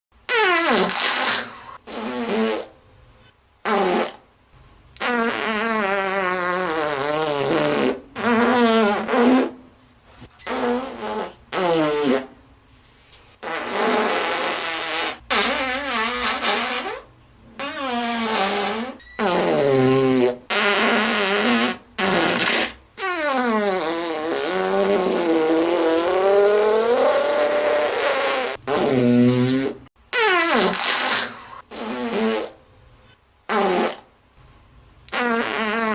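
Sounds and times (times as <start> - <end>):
fart sound effects: 0.3 - 2.8, 3.6 - 4.2, 5.0 - 9.6, 10.2 - 12.4, 13.4 - 32.6, 33.5 - 34.1, 35.1 - 35.9.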